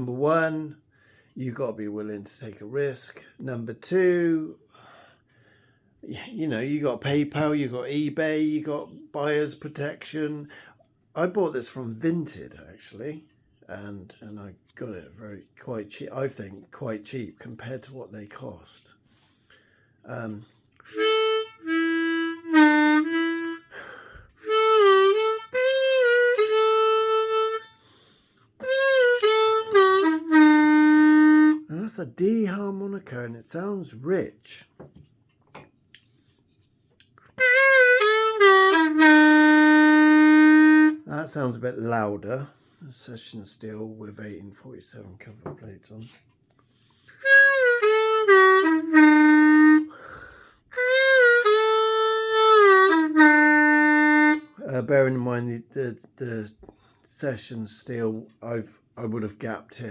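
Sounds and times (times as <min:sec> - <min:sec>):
harmonica held notes: 0:20.8 - 0:31.7, 0:37.3 - 0:41.1, 0:47.0 - 0:54.7.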